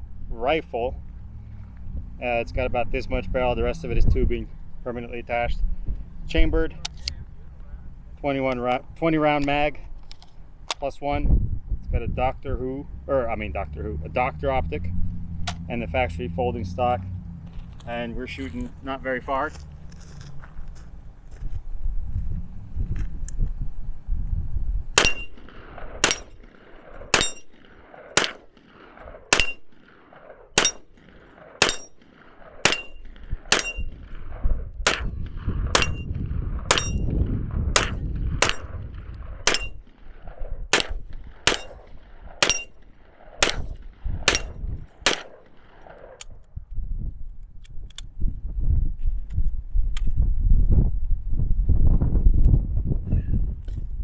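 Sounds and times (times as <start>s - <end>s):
wind rumble on microphone: 0.0s - 28.0s, 28.6s - 54.0s
metallic ring: 25.0s - 26.4s, 27.2s - 27.7s, 29.4s - 29.7s, 30.6s - 31.0s, 31.6s - 32.1s, 32.7s - 34.0s, 35.8s - 36.1s, 36.7s - 37.2s, 39.5s - 39.8s, 41.5s - 41.8s, 42.4s - 43.7s
rifle gunshots: 25.0s - 46.2s.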